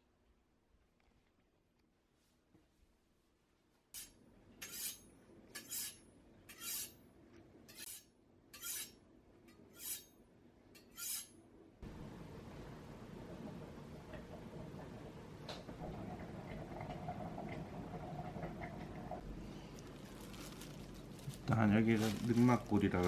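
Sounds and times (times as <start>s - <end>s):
low room rumble: 11.4s - 23.0s.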